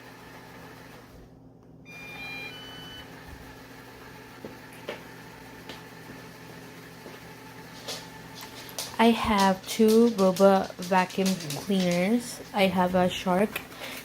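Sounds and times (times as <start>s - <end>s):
robot vacuum beeping chime: 1.9s - 3.2s.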